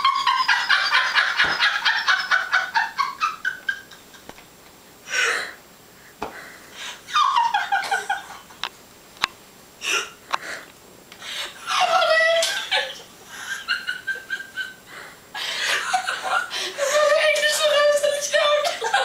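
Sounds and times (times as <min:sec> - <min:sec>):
girls giggling: 0:00.0 - 0:04.4, 0:07.0 - 0:08.6, 0:11.5 - 0:19.0.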